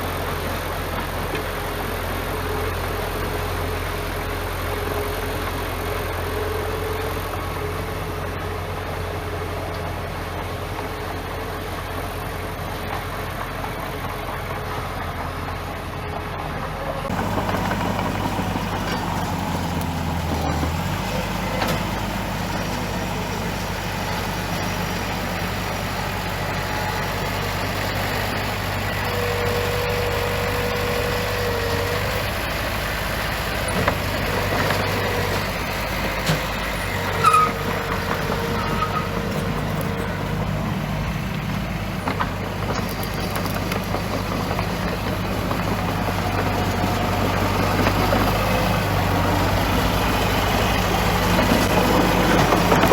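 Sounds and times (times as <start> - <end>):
bulldozer diesel engine running: 0.0 - 52.9
brief squeals: 36.8 - 37.7.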